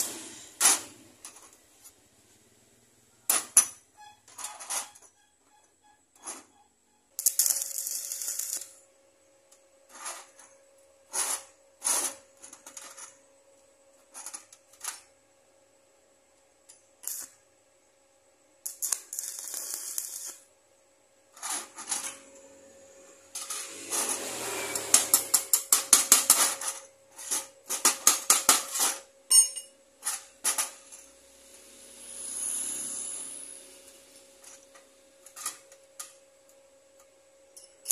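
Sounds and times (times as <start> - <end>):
small metal parts clinking: 24.9 - 31.1.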